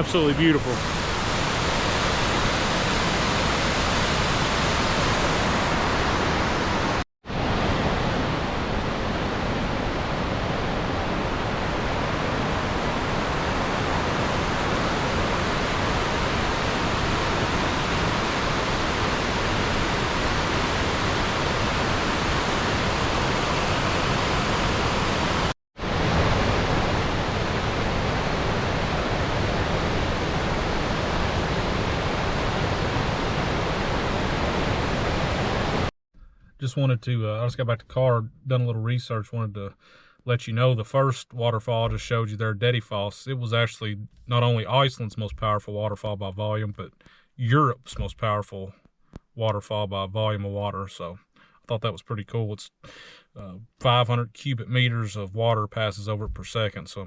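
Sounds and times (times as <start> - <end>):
waterfall rushing: 0.0 - 9.7.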